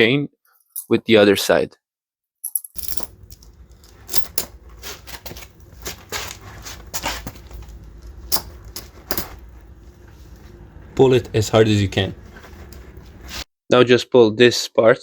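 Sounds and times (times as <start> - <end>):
metal chain links clinking: 2.4 - 9.7
low steady rumble: 2.8 - 13.4.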